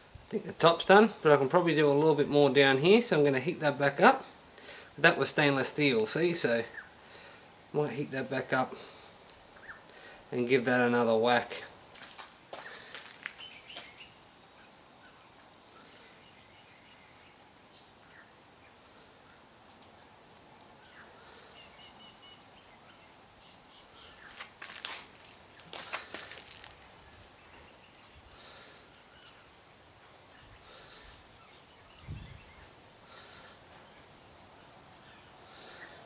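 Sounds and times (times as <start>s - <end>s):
bird calls: 12.6s - 18.3s, 20.8s - 29.5s.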